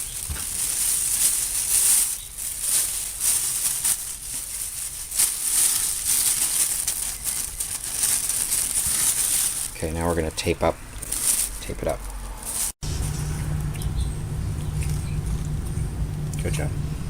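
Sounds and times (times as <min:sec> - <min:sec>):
bag crinkling and rustling: 0:00.0 - 0:13.2.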